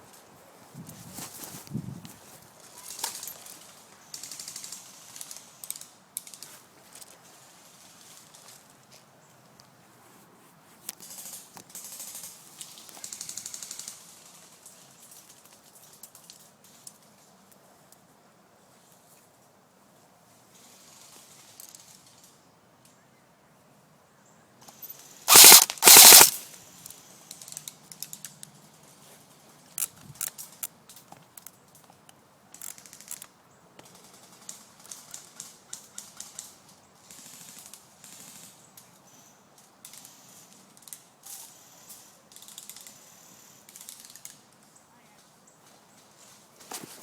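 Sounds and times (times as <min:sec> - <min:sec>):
light ticks and rustles: 0:00.0 - 0:23.0, 0:24.6 - 0:47.0
airsoft gun bursts: 0:25.3 - 0:26.4.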